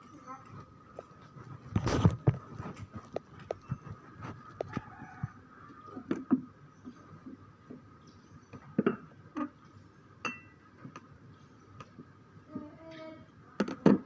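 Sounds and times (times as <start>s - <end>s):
glassware clinking: 10.2s - 10.6s.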